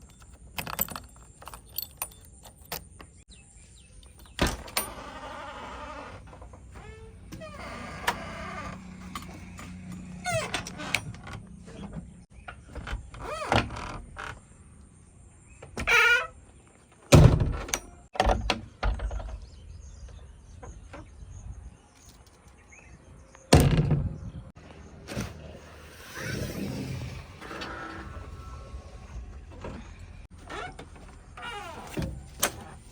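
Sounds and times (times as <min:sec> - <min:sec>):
wavering squeals: 0:25.6 - 0:30.7.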